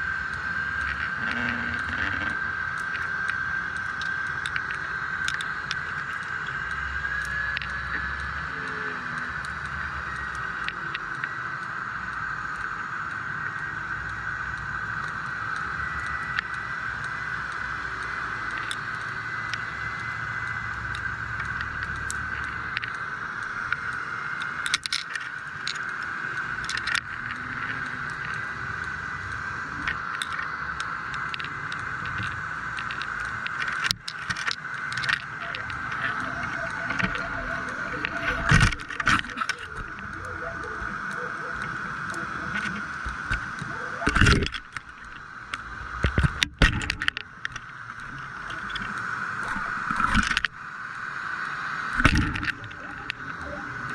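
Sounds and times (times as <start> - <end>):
sharp knocks and clicks: 46.0 - 47.7.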